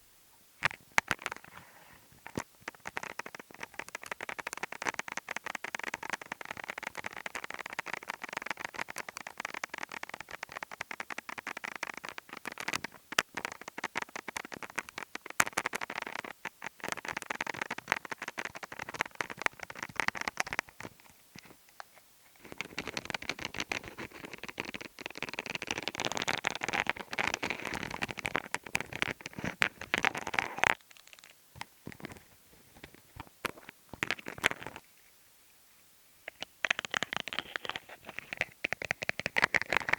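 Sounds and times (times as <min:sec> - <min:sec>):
fast close-up tapping: 0:00.6 - 0:01.6, 0:02.2 - 0:21.6, 0:22.4 - 0:32.2, 0:32.8 - 0:34.8, 0:36.3 - 0:39.9
light scratches: 0:36.6 - 0:39.9.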